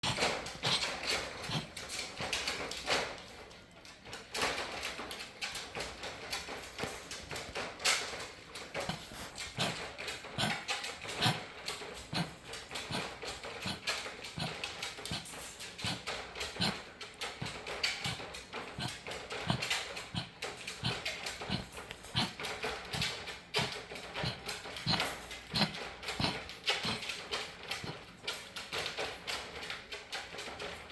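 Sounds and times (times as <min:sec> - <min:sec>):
dog coughing: 0:00.0 - 0:02.7, 0:08.8 - 0:28.1.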